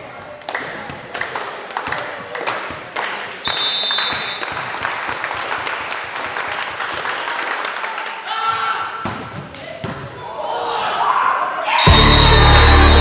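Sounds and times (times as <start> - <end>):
spectators clapping and cheering: 0.4 - 8.4, 11.8 - 13.0
high-pitched tone: 11.9 - 13.0.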